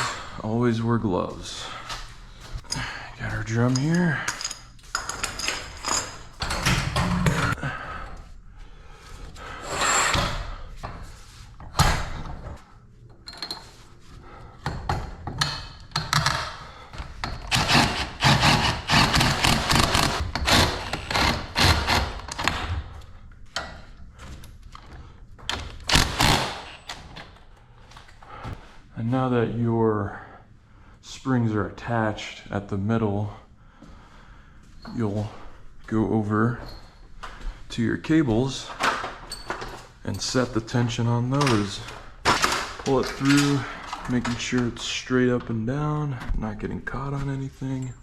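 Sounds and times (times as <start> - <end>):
metal scraping and rubbing: 17.4 - 22.3.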